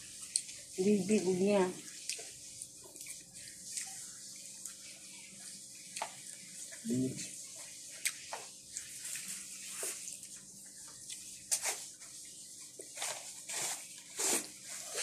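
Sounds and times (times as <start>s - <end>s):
wet chewing and slurping: 1.8s - 12.0s.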